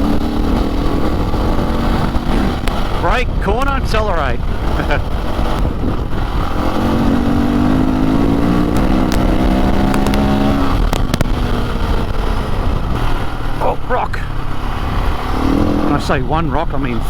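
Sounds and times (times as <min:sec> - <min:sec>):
dirt bike engine: 0:00.0 - 0:17.0
steady low rumble: 0:00.0 - 0:17.0
sharp clicks: 0:08.7 - 0:11.6.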